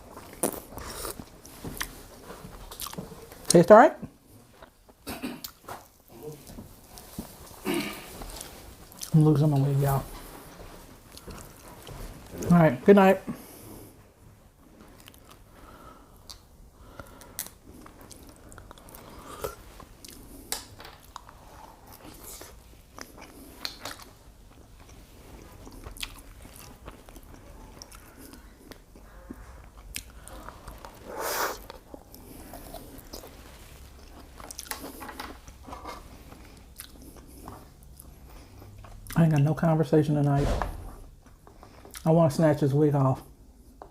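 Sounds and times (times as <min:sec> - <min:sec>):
person chewing and smacking: 0:00.0 - 0:03.6, 0:04.5 - 0:09.7, 0:14.9 - 0:15.5, 0:16.2 - 0:39.5, 0:41.2 - 0:42.1.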